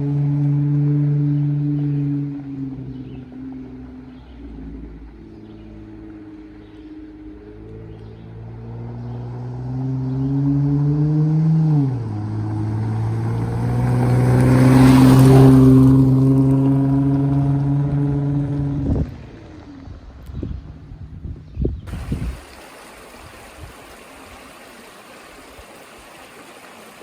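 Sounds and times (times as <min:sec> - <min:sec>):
vehicle engine accelerating: 0:00.0 - 0:21.2.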